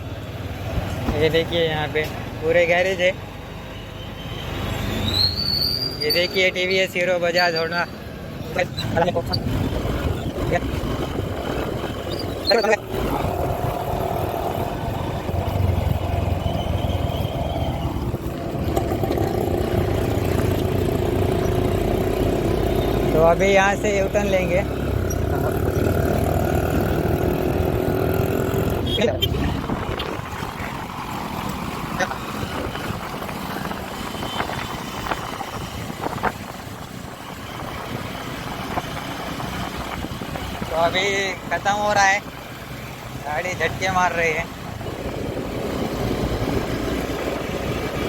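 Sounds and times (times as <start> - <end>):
road noise: 0.0 - 48.0
motorcycle engine running: 9.5 - 34.3.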